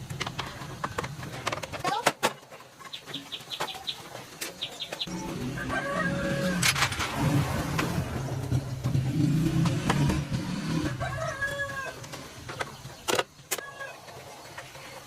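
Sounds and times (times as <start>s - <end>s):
chickens clucking: 2.4s - 6.7s.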